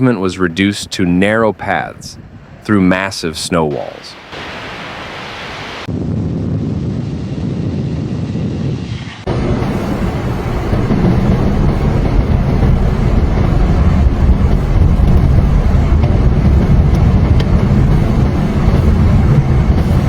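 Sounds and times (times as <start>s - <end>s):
vehicle engine rumble: 5.9s - 20.0s
road noise: 6.6s - 20.0s.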